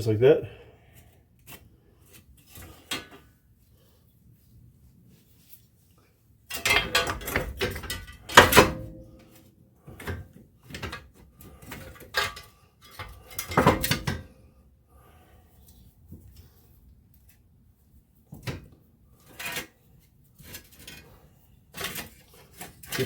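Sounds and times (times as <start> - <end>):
metal clanking and scraping: 6.5 - 9.4, 11.6 - 14.3.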